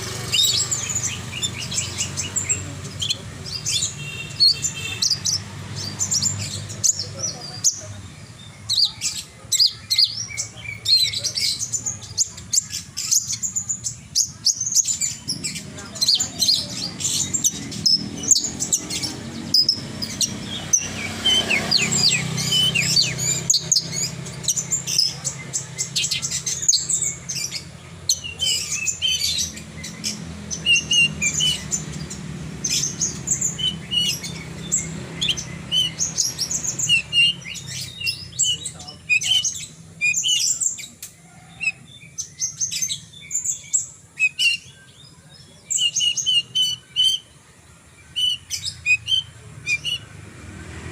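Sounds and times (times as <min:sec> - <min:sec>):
lark singing chirps and trills: 0:00.0 - 0:50.9.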